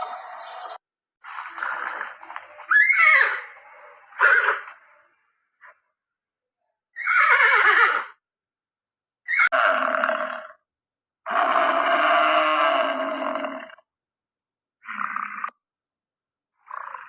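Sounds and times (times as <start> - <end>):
long animal calls: 1.5 - 4.8, 7.0 - 8.2, 9.3 - 10.6, 11.2 - 13.8
horse whinnying: 2.7 - 3.6, 4.2 - 4.7, 7.0 - 8.2, 9.3 - 10.5.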